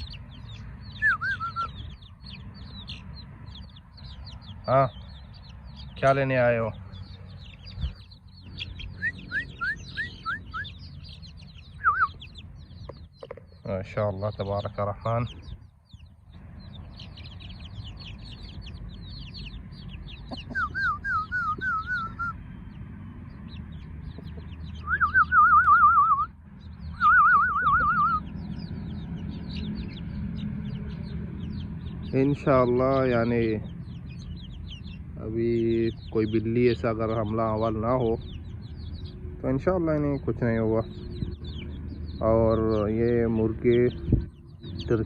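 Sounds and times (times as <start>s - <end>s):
chicks peeping: 0.0s - 45.0s
chick wavering call: 27.0s - 28.2s.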